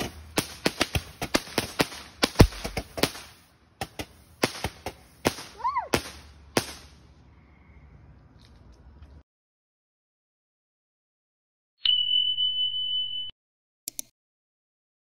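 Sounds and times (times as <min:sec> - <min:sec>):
firework fountain crackling: 0:00.0 - 0:07.1.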